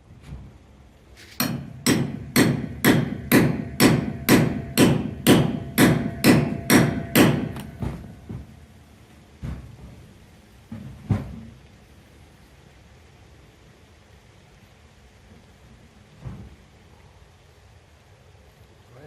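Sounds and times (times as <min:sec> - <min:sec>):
hammer striking metal bolt: 0:01.4 - 0:08.1.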